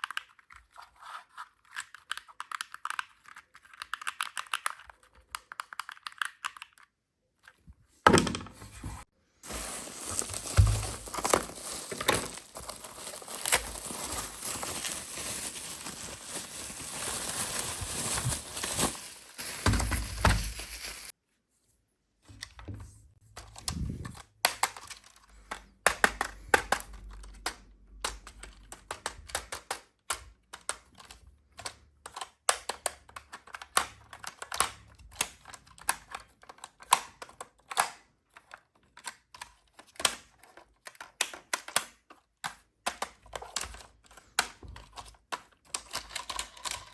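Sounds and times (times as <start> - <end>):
plastic parts clicking and tapping: 1.5 - 8.4, 22.2 - 46.9
plastic packaging crinkling: 9.4 - 21.1.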